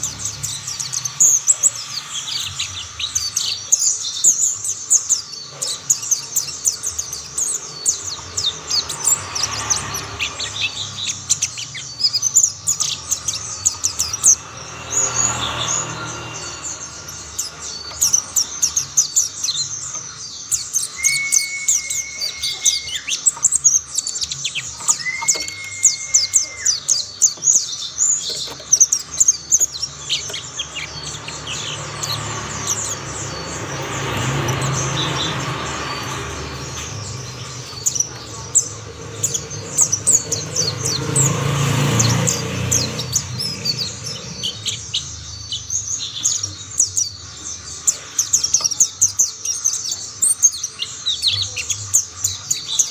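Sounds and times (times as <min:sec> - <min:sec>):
birds twittering: 0:00.0 - 0:52.9
long whistled tones: 0:20.8 - 0:23.3, 0:24.9 - 0:26.9.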